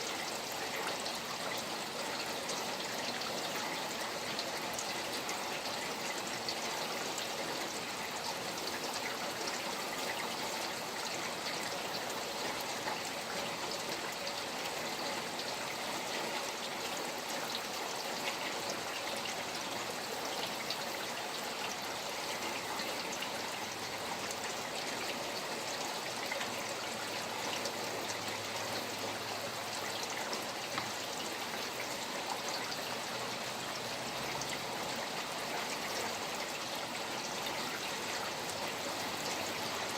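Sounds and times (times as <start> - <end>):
steady rain: 0.0 - 39.9
stream trickling: 0.0 - 39.9.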